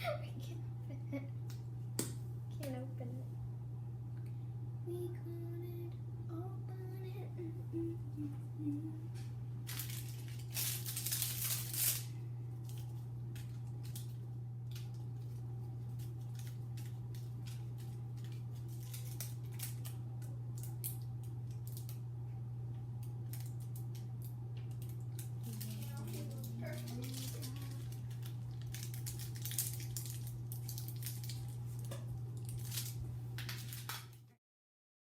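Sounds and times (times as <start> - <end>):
low electrical hum: 0.0 - 34.4
plastic packaging rustling: 9.6 - 22.0, 23.2 - 34.2.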